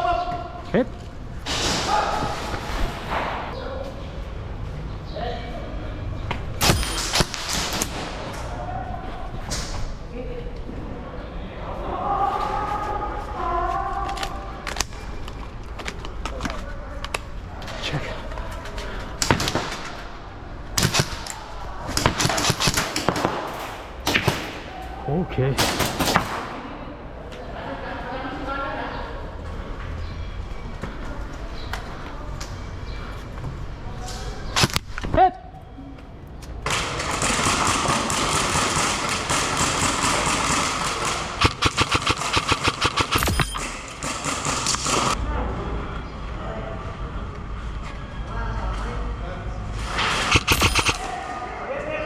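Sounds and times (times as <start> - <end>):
airsoft guns firing: 6.6 - 8.4, 19.2 - 20.2, 20.8 - 24.8, 25.6 - 26.7, 36.6 - 45.2, 50.0 - 51.2.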